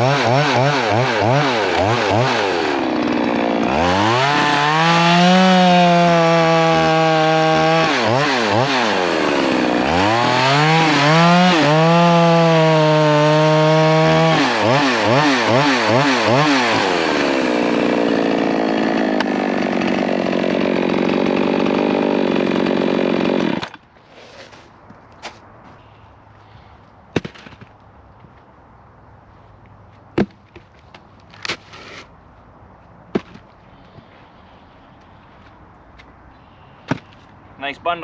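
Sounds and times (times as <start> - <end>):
chainsaw cutting wood: 0.0 - 24.4.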